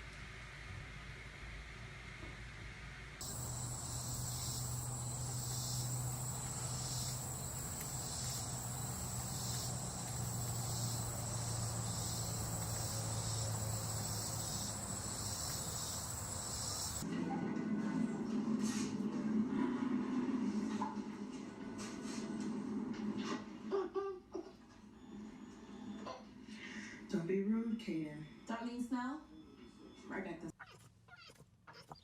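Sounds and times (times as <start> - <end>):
low steady hum: 3.2 - 17.0
pulsing insect chorus: 3.2 - 17.0.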